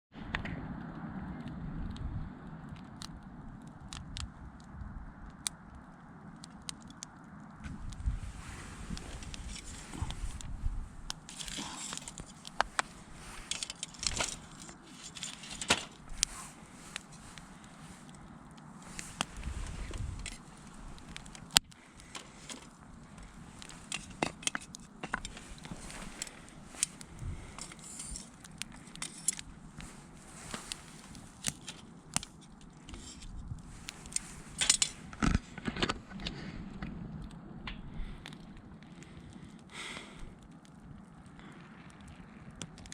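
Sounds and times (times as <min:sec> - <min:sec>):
wood fire crackling and popping: 0:00.2 - 0:42.9.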